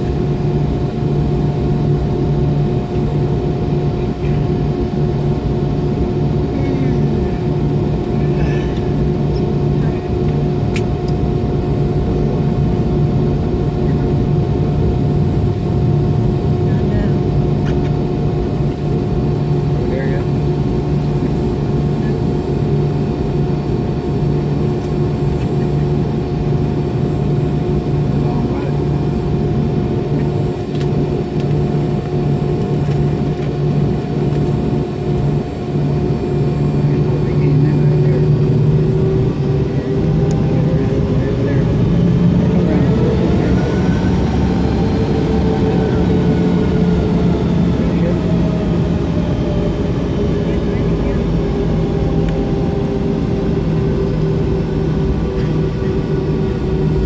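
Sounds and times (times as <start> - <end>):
jet engines droning in cabin: 0.0 - 57.0.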